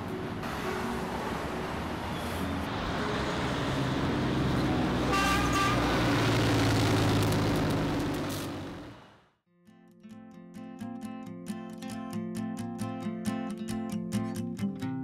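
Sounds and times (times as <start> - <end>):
car horn toot: 5.1 - 5.9.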